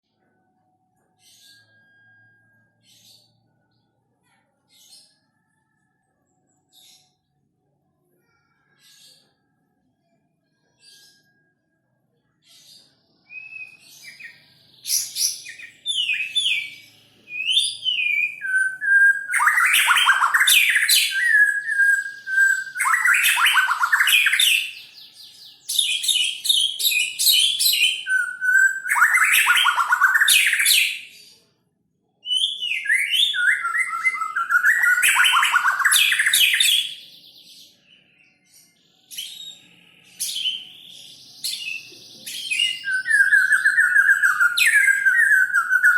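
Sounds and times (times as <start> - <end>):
bird singing whistles and trills: 1.0 - 3.5, 13.2 - 31.4, 32.2 - 45.9.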